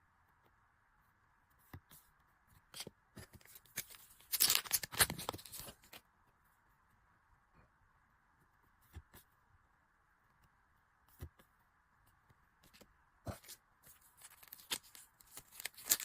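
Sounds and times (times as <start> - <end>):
packaging rustling and crinkling: 13.4 - 16.0.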